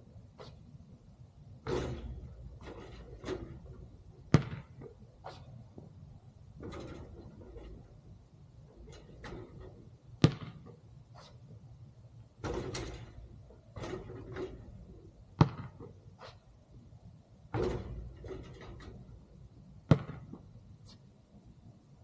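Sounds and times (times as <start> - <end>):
basketball smacks: 4.3 - 5.4, 10.2 - 10.8, 15.4 - 15.9, 19.9 - 20.4.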